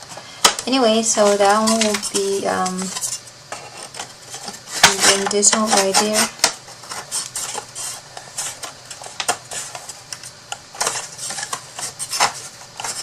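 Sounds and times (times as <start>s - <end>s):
box pieces clicking and tapping: 1.4s - 3.1s.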